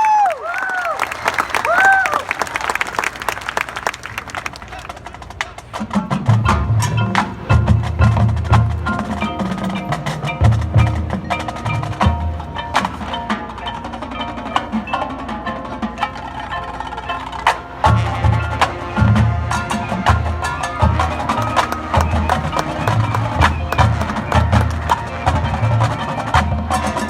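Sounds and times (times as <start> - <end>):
ringing mallet keyboard notes: 6.4 - 27.0
sharp percussion clicks: 20.6 - 25.4.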